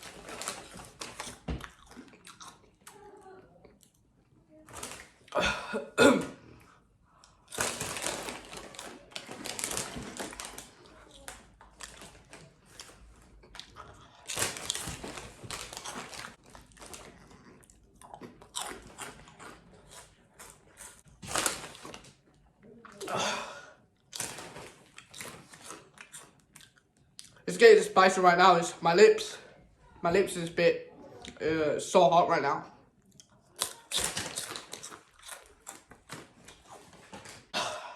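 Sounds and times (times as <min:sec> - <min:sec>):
crunching and chewing snacks: 0:00.0 - 0:05.4, 0:06.3 - 0:23.2, 0:24.0 - 0:27.4, 0:33.0 - 0:37.6.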